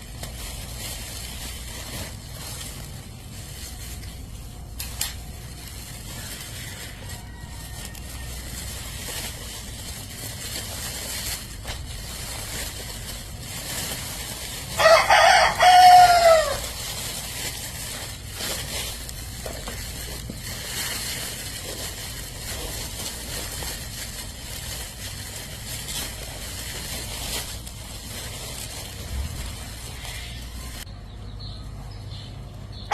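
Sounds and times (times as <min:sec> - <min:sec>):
rooster crowing: 0:06.2 - 0:08.9, 0:14.7 - 0:16.8.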